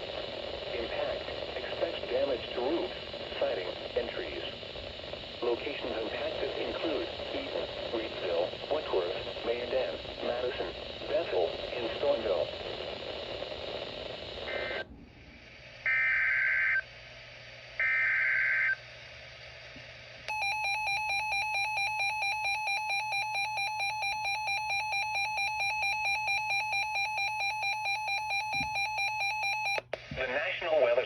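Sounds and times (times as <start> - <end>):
digital data tone bursts: 20.3 - 29.8
two-tone attention signal: 20.3 - 29.8.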